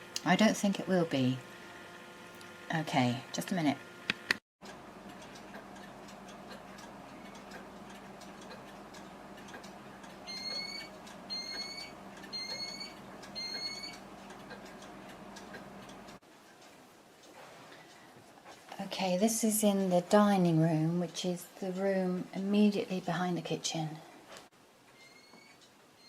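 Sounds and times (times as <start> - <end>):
low steady hum: 0.0 - 24.4
carbon monoxide alarm beeps: 10.2 - 14.0.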